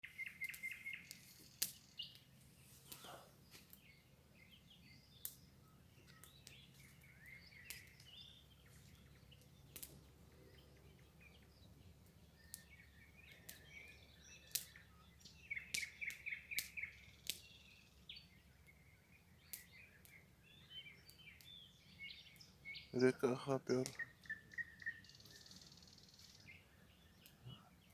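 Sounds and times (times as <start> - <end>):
songbirds chirping: 0.0 - 27.9
sharp clicks: 5.2 - 11.5, 12.5 - 14.8.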